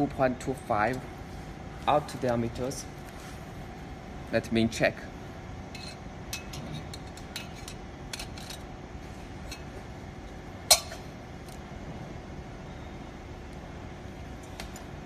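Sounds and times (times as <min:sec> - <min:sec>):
steady background hum: 0:00.0 - 0:15.0
metal parts clicking and clinking: 0:05.7 - 0:08.7.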